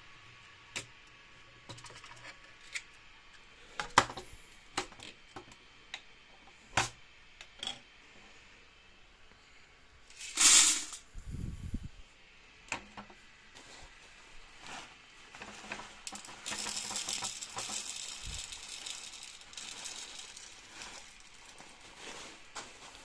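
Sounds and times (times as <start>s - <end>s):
plastic parts clicking and knocking: 15.4s - 21.4s.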